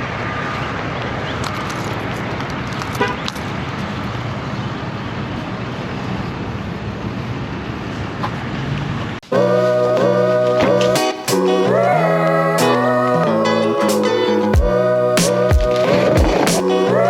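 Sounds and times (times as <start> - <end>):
traffic: 0.0 - 17.0
wind: 0.0 - 17.0.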